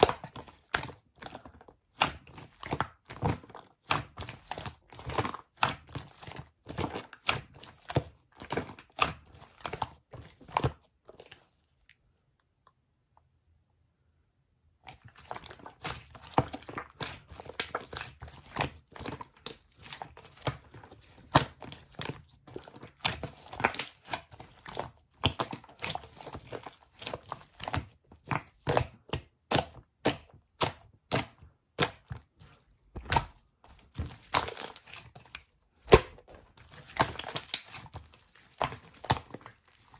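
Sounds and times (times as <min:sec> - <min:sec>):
slime crackling and popping: 0:15.1 - 0:39.9.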